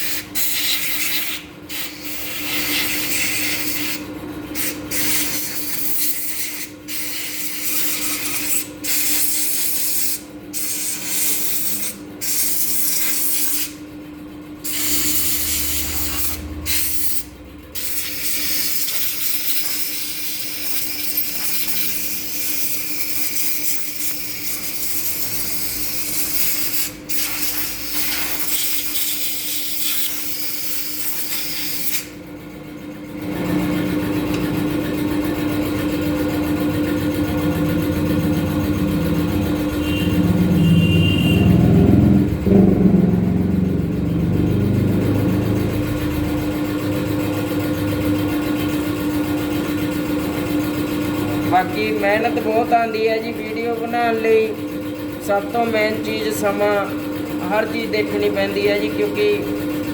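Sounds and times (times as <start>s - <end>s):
steady motor hum: 0.0s - 59.9s
high-pressure spray hissing: 4.6s - 13.7s, 14.6s - 17.2s, 17.8s - 32.0s
engine running: 7.4s - 59.9s.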